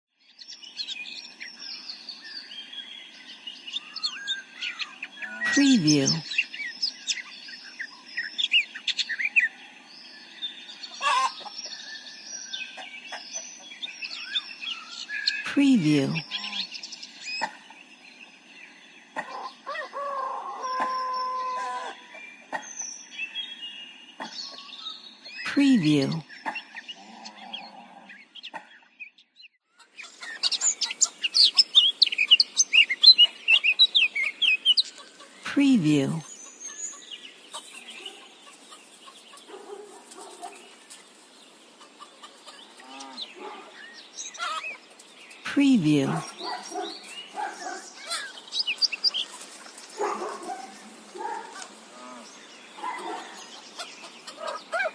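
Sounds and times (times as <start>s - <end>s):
songbirds chirping: 0.1s - 54.9s
rooster crowing: 19.7s - 22.0s
hens clucking: 41.8s - 42.8s.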